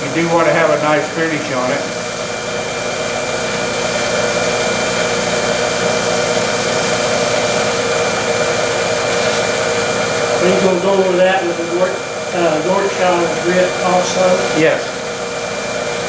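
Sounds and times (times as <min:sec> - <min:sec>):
polishing pad buffing: 0:00.0 - 0:16.0
wood lathe whirring: 0:00.0 - 0:16.0.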